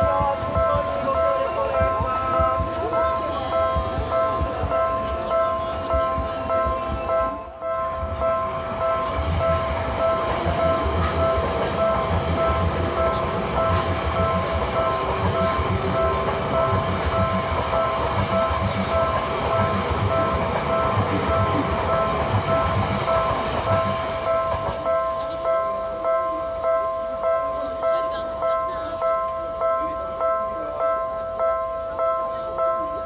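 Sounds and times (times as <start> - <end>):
train wheels clattering over rails: 0.0 - 7.1, 7.9 - 25.5
crossing warning bell ringing: 0.0 - 33.0.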